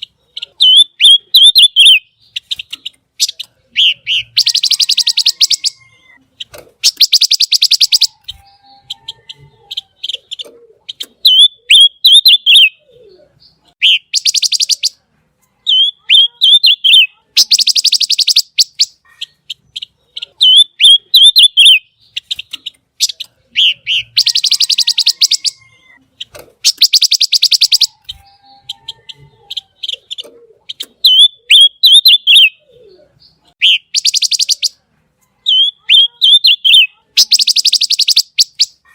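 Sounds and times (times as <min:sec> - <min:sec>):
songbird singing: 0:00.0 - 0:38.9
rasping rapid bird trills: 0:15.7 - 0:33.0
sharp whistled bird notes: 0:33.6 - 0:34.8, 0:35.5 - 0:38.8.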